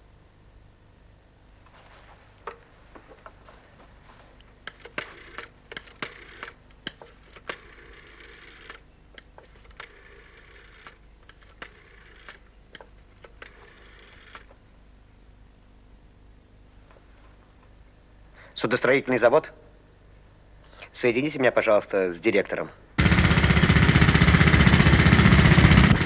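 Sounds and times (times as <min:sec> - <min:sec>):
rotary dial whirring back: 0:02.0 - 0:14.6
rotary dial clicking: 0:04.6 - 0:14.6.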